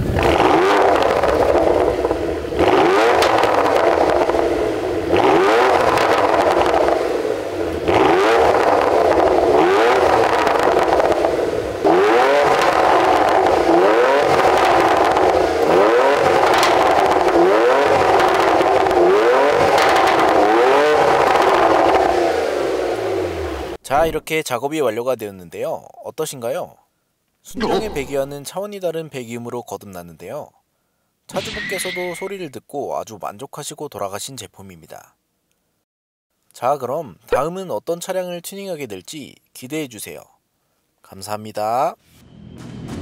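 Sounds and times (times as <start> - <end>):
car engine revving: 0.0 - 23.8.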